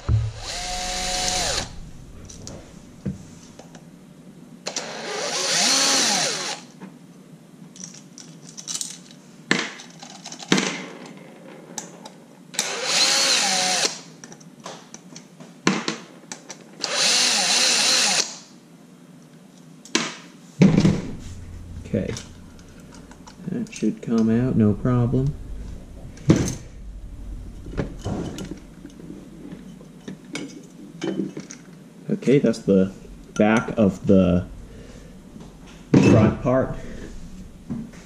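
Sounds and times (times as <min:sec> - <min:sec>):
electric screwdriver motor: 0:00.4 - 0:01.7.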